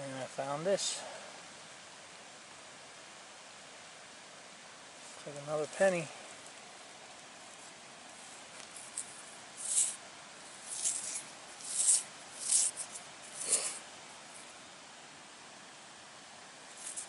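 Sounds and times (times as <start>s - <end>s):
hands rubbing a coin and dirt: 7.5s - 14.5s, 16.7s - 17.0s.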